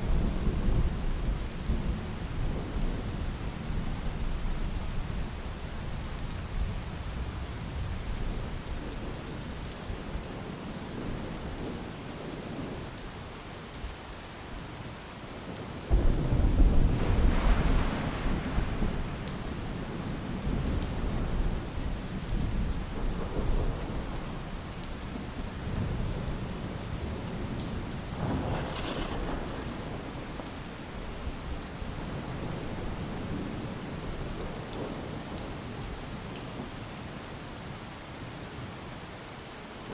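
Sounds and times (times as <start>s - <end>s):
steady rain falling: 0.0s - 39.9s
thunder clap: 15.9s - 21.5s, 27.8s - 31.4s.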